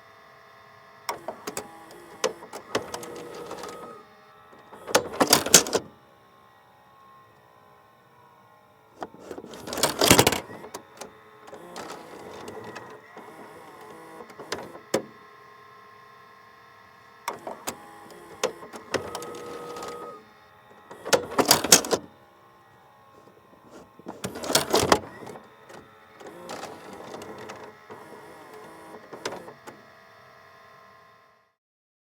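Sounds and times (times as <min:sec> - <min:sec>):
tape deck mechanism whirring: 0:01.0 - 0:06.0, 0:08.8 - 0:31.0
plastic cassette clattering: 0:04.6 - 0:05.9, 0:09.0 - 0:13.4, 0:20.8 - 0:22.1, 0:23.2 - 0:29.8.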